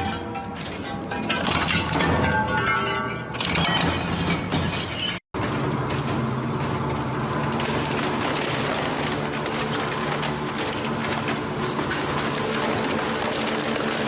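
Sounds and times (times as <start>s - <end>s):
shredding machine motor hum: 5.4s - 14.0s
material cracking and crunching: 7.4s - 14.0s.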